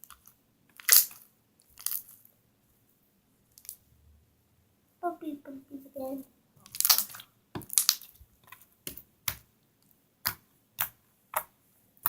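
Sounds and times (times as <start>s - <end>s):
slime popping crackles: 0.8s - 1.2s, 6.7s - 9.4s.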